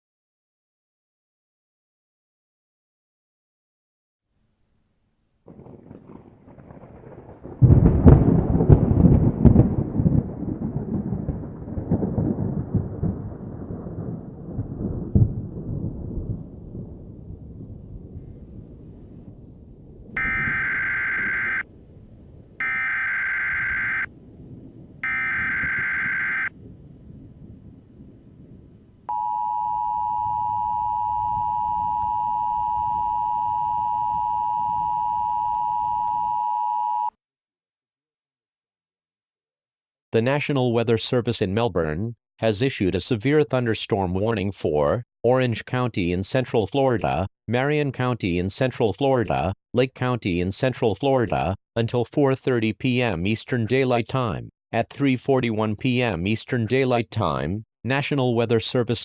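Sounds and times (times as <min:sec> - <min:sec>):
thunder clap and rumble: 0:05.5 - 0:29.2
faint low rumble: 0:15.1 - 0:35.2
steady alert tone: 0:20.2 - 0:21.6, 0:22.6 - 0:24.1, 0:25.0 - 0:26.5.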